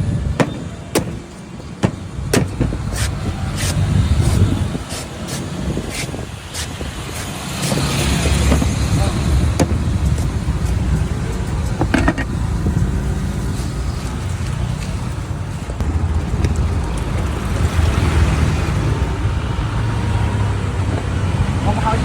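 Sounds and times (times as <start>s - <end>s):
street traffic rumble: 0.0s - 22.0s
sharp knocks: 0.3s - 3.2s, 7.7s - 10.3s.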